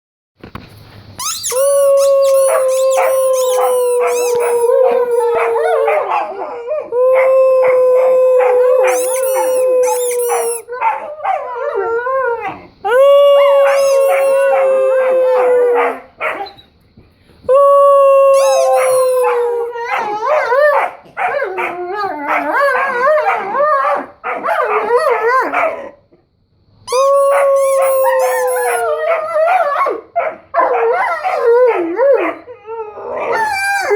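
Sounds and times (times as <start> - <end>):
dogs whining and yipping: 1.2 - 6.9, 8.4 - 12.6, 13.4 - 14.6, 18.3 - 25.9, 26.9 - 30.0, 30.6 - 33.9
dogs howling: 1.5 - 16.5, 17.5 - 26.0, 26.9 - 33.9.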